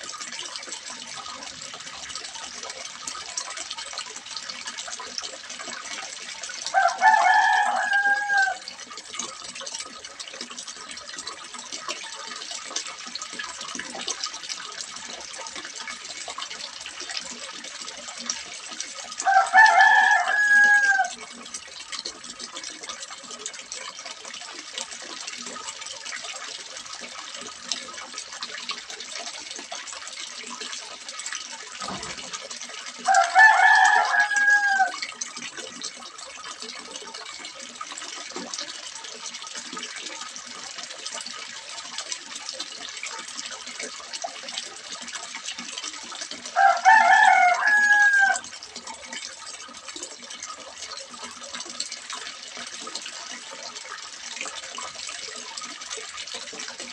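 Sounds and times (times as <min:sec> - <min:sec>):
water splashing into pond: 0:00.0 - 0:56.9
rooster crowing: 0:06.7 - 0:08.7, 0:19.2 - 0:21.1, 0:33.1 - 0:35.0, 0:46.6 - 0:48.5.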